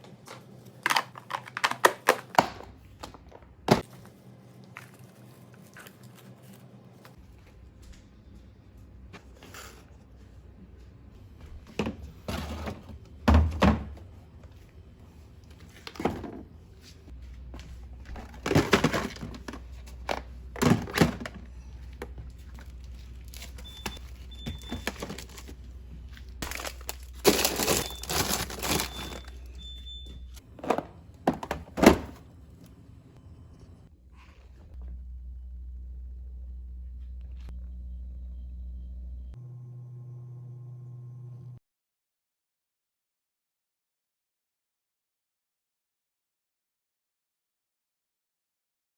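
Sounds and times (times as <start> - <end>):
low steady hum: 2.7 - 41.6
containers thunking on shelves: 11.7 - 14.1, 18.2 - 21.4, 30.5 - 32.2
plastic crinkling: 22.5 - 29.6.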